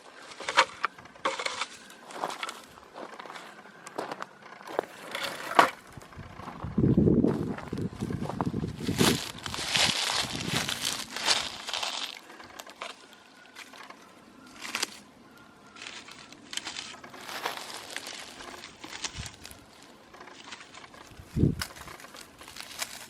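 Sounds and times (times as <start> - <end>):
plastic trash bag crinkling: 8.1 - 13.1, 15.8 - 23.0.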